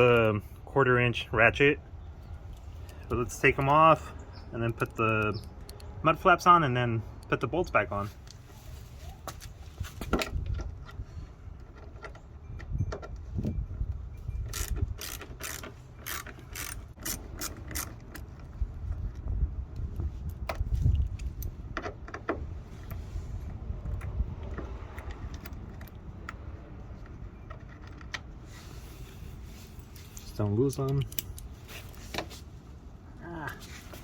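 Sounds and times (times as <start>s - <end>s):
ratchet clicking: 14.4s - 18.3s.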